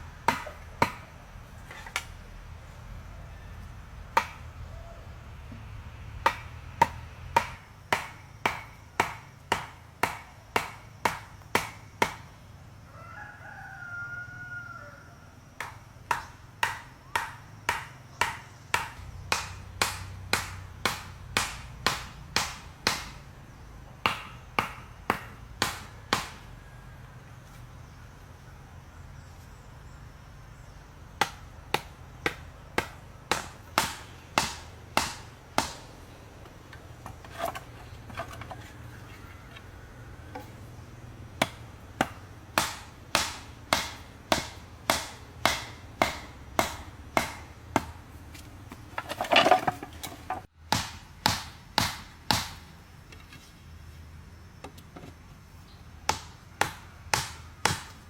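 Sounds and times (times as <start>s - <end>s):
chopping or hammering on wood: 0.2s - 1.1s, 4.1s - 4.4s, 6.2s - 12.3s, 15.6s - 23.2s, 24.0s - 26.5s, 31.2s - 35.9s, 41.4s - 48.0s, 48.7s - 52.6s, 56.0s - 58.0s
rooster crowing: 12.9s - 15.4s.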